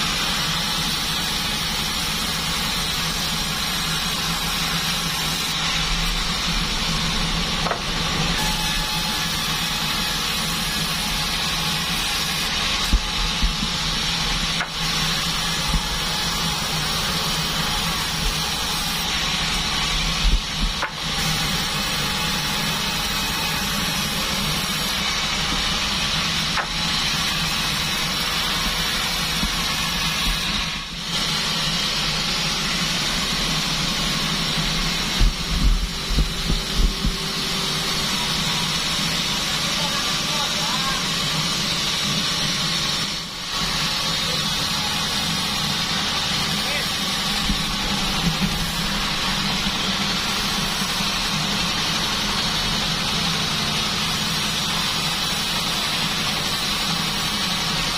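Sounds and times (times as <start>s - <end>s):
bandsaw cutting wood: 0.0s - 57.9s
knocks of wood: 7.6s - 8.0s, 26.6s - 26.8s.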